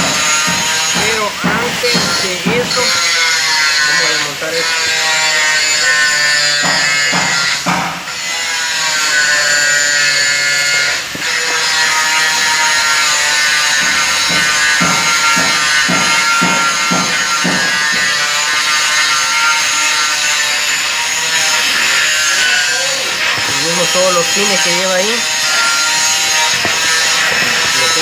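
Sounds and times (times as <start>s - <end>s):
power tool motor whining: 0.0s - 28.0s
low knocks on metal: 6.7s - 8.1s, 13.7s - 18.3s.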